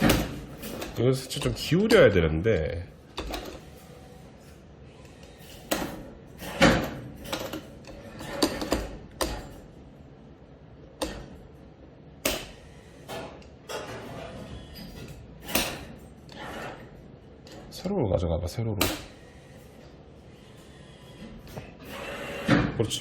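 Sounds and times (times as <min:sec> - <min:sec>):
claw machine clunks and knocks: 0:00.0 - 0:02.2, 0:03.1 - 0:04.0, 0:05.2 - 0:09.7, 0:11.0 - 0:11.5, 0:12.2 - 0:17.8, 0:18.8 - 0:19.4, 0:21.2 - 0:22.9
low machine hum: 0:00.0 - 0:23.0.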